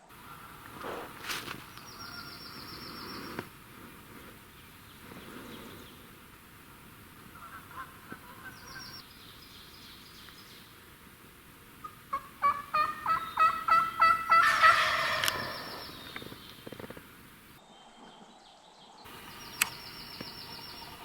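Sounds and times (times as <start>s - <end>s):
faint songbirds singing: 0.0s - 11.1s, 11.8s - 21.0s
turkey gobble: 7.3s - 9.0s, 11.8s - 16.3s
turkey yelping: 7.3s - 9.0s, 11.8s - 16.2s.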